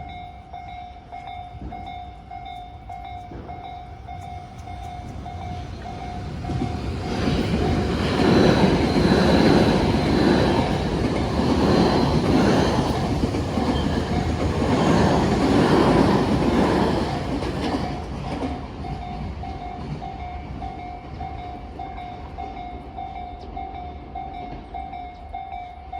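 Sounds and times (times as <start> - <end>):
level crossing warning bell: 0.0 - 25.9
train wheels clattering over rail joints: 3.1 - 21.4.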